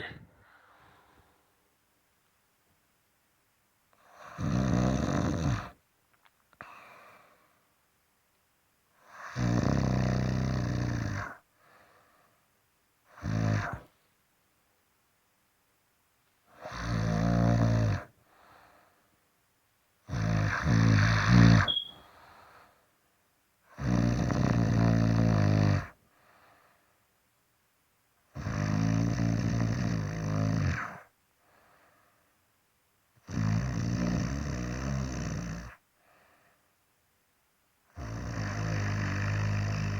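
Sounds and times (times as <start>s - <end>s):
person snoring loudly: 4.1s - 5.8s, 9.1s - 11.4s, 13.1s - 13.9s, 16.6s - 18.1s, 20.1s - 21.7s, 23.7s - 26.0s, 28.4s - 31.0s, 33.2s - 35.8s, 38.0s - 39.9s.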